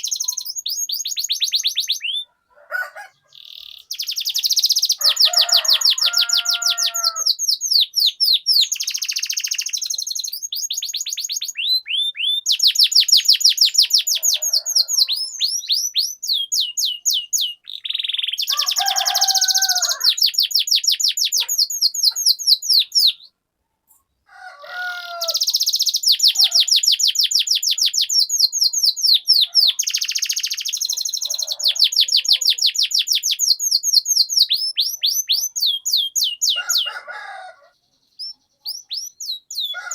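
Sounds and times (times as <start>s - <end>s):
canary singing trills: 0.0s - 23.4s, 24.8s - 39.9s.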